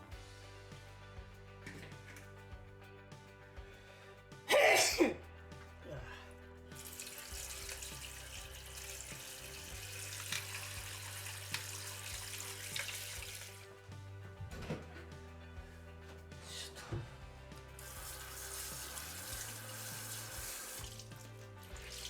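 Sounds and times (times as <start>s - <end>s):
background music: 0.0s - 22.0s
water running from a tap: 6.7s - 13.9s, 17.6s - 22.0s.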